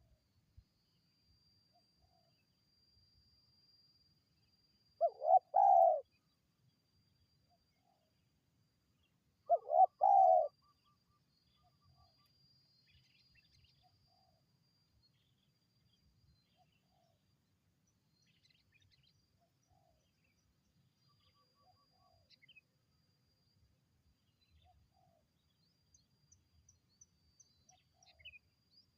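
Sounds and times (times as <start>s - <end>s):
dove cooing: 5.0s - 6.0s, 9.5s - 10.6s.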